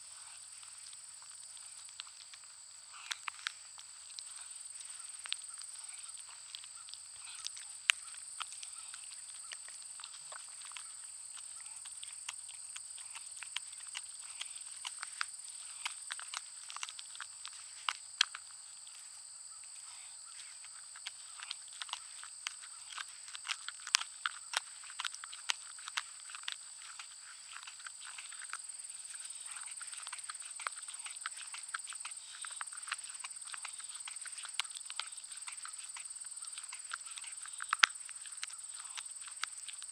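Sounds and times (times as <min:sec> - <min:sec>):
dog chewing a bone: 0:00.2 - 0:19.1, 0:20.3 - 0:39.9.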